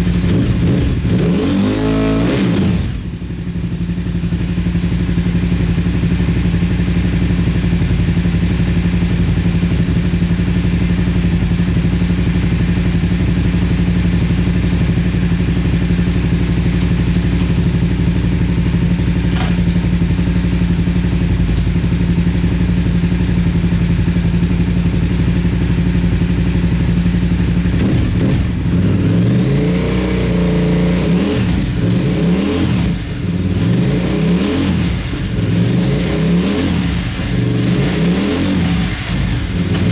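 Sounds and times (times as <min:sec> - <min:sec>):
motorcycle engine idling and revving: 0:00.0 - 0:39.9.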